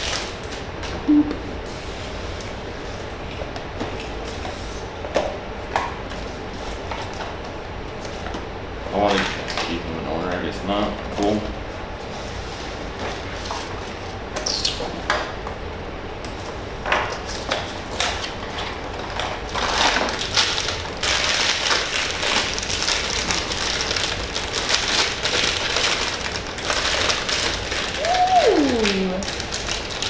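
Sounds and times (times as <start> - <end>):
packaging rustling and crinkling: 0.0 - 0.7, 17.3 - 30.0.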